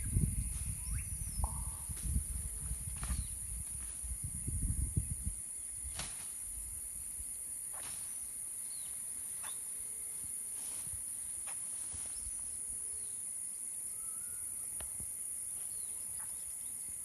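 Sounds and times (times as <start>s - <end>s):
low rumbling on microphone: 0.0s - 5.4s
high-pitched insect buzz: 0.0s - 17.0s.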